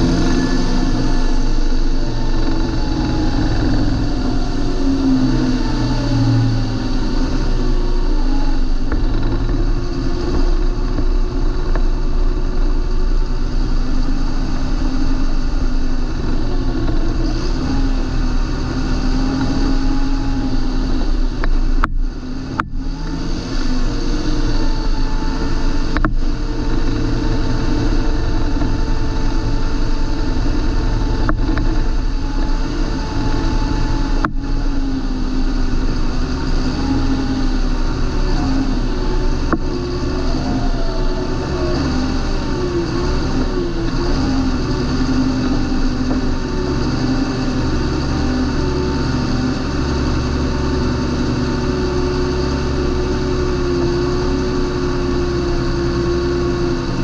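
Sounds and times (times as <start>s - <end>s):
tractor diesel engine running: 0.0s - 57.0s.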